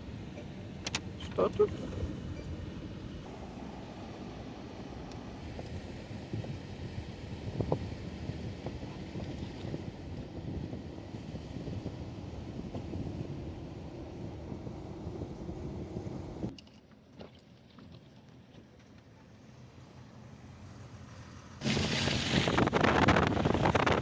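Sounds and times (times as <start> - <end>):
van engine rumble inside cab: 0.0 - 16.5.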